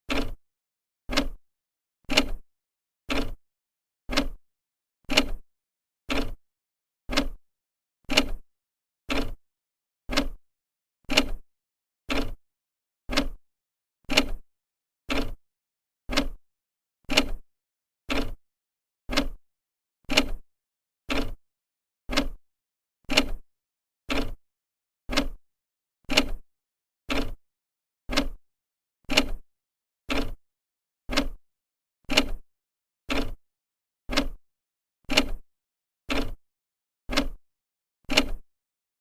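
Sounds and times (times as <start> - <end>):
clock ticking: 4.1 - 4.4, 7.1 - 7.4, 10.1 - 10.4, 13.1 - 13.4, 16.1 - 16.4, 19.1 - 19.4, 22.1 - 22.4, 25.1 - 25.4, 28.1 - 28.4, 31.1 - 31.4, 34.1 - 34.4, 36.1 - 36.4, 37.1 - 37.4.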